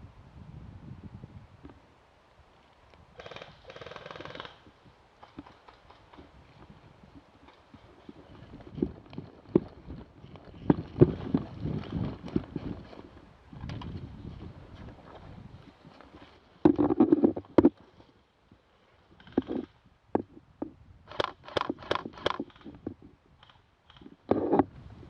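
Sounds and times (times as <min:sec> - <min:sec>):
sharp knocks and clicks: 0:16.6 - 0:17.8, 0:21.1 - 0:22.8.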